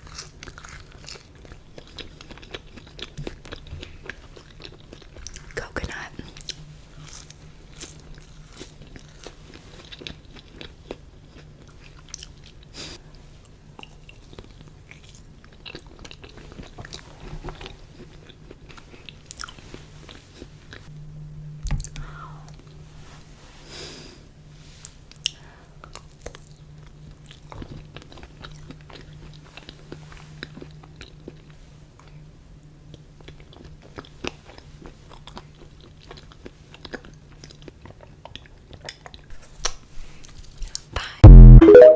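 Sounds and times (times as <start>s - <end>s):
person chewing crunchy food: 0.0s - 5.6s, 6.3s - 12.8s, 13.8s - 20.9s, 33.2s - 41.4s
steady low hum: 41.2s - 41.7s.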